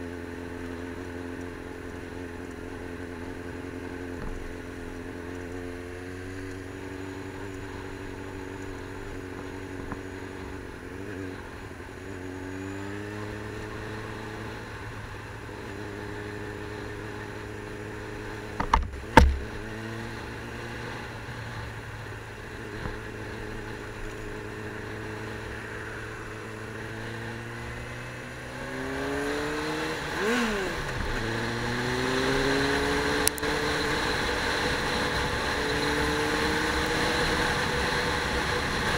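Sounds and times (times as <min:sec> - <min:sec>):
vehicle engine accelerating: 0:00.0 - 0:38.9
loud knocks: 0:18.6 - 0:19.5.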